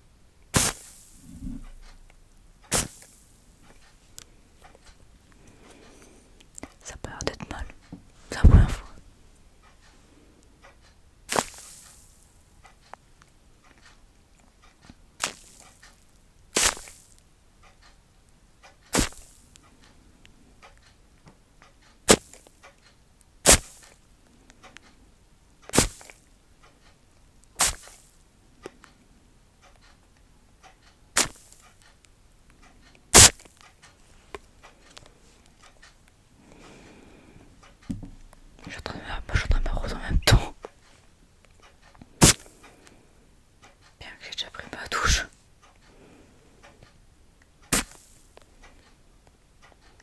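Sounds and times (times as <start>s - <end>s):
loud sharp snaps: 0.5s - 3.2s, 11.3s - 12.2s, 15.2s - 15.7s, 16.6s - 17.1s, 18.9s - 19.4s, 23.4s - 24.0s, 25.7s - 26.2s, 27.6s - 28.2s, 31.2s - 31.7s, 33.1s - 33.6s, 42.2s - 43.0s, 47.7s - 48.5s
sharp snapping impacts: 0.6s - 3.2s, 31.2s - 31.6s, 33.2s - 33.5s, 42.2s - 42.6s, 47.7s - 48.2s
faint small clicks: 8.9s - 25.0s, 25.6s - 29.0s, 29.6s - 38.8s, 43.6s - 50.0s.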